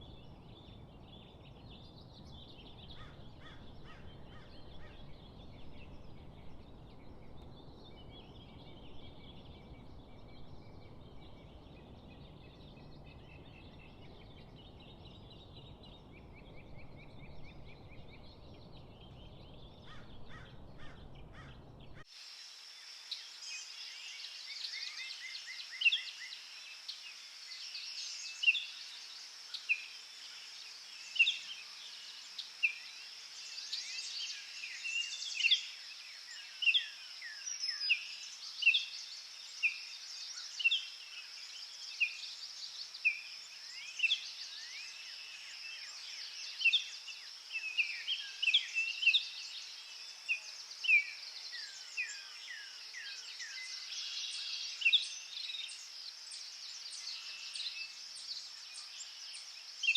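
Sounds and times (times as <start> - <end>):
steady high hiss: 22.1 - 59.9.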